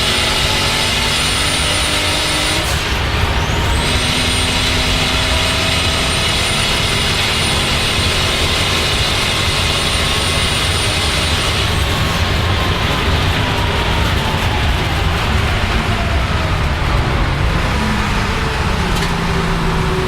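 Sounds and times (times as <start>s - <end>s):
car engine running hard: 0.0s - 20.0s.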